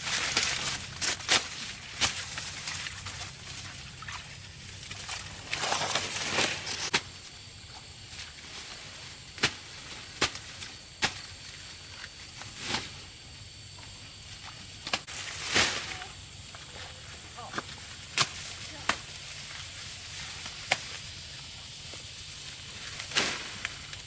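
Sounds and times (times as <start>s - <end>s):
rustling: 0.0s - 10.6s.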